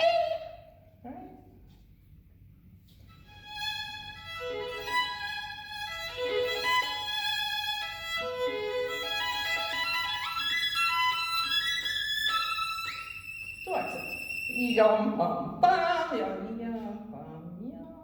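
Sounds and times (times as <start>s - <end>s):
solo violin melody: 3.1s - 15.1s.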